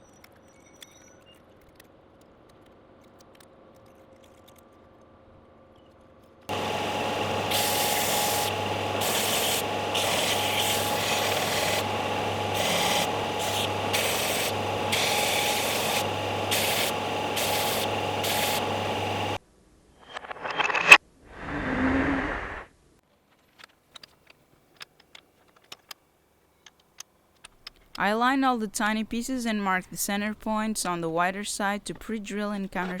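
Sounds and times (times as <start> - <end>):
electric sander on wood: 6.5 - 19.4.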